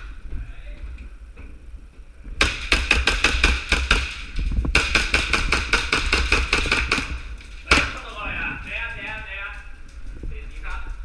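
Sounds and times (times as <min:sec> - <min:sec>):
airsoft gun shots: 0:02.4 - 0:08.0.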